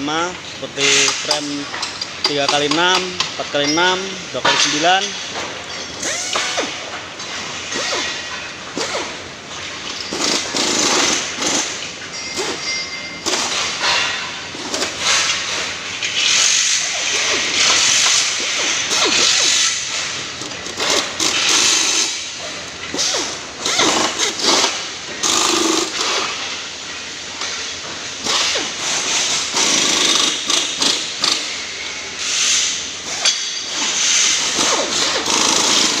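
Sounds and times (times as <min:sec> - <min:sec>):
power tool hissing bursts: 0:34.0 - 0:36.0.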